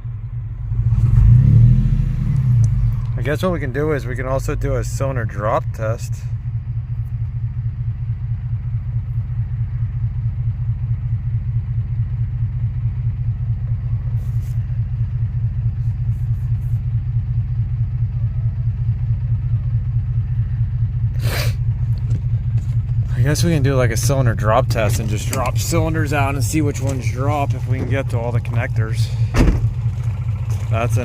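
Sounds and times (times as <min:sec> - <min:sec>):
car engine idling roughly: 0:02.7 - 0:31.0.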